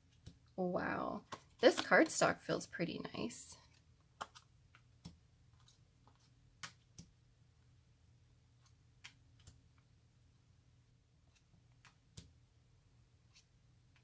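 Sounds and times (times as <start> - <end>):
cards clicking as flipped: 4.2 - 7.1.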